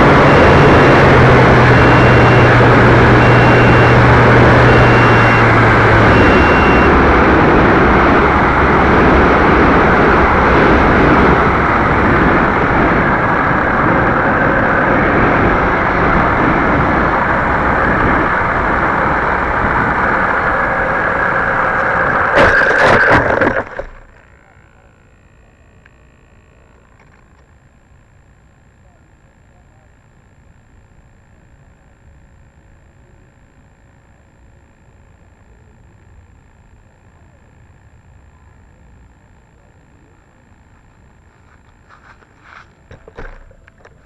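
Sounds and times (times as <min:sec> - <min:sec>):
model airplane motor and rushing air: 0:00.0 - 0:28.2.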